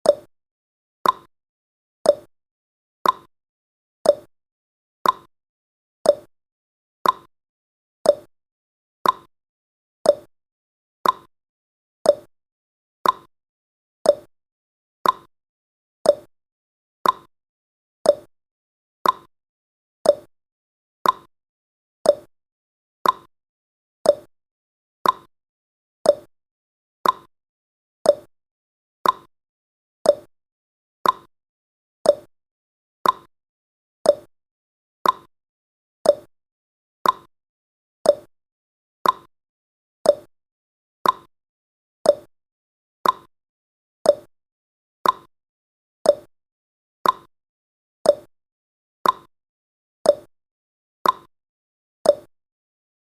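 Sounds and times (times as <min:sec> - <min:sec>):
clock ticking: 0:25.0 - 0:25.3, 0:27.0 - 0:27.3, 0:31.0 - 0:31.3, 0:33.0 - 0:33.3, 0:35.0 - 0:35.3, 0:37.0 - 0:37.3, 0:39.0 - 0:39.3, 0:41.0 - 0:41.3, 0:43.0 - 0:43.3, 0:45.0 - 0:45.3, 0:47.0 - 0:47.3, 0:49.0 - 0:49.3.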